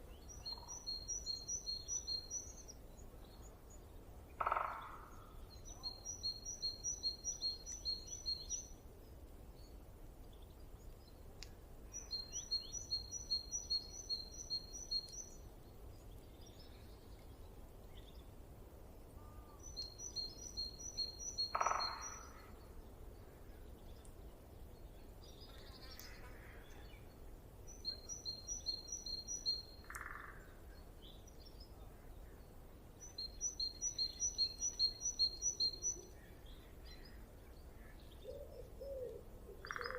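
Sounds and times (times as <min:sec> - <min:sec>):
songbird chirping: 0:00.0 - 0:39.9
low bird calls: 0:04.4 - 0:08.6, 0:19.2 - 0:22.7, 0:37.0 - 0:39.9.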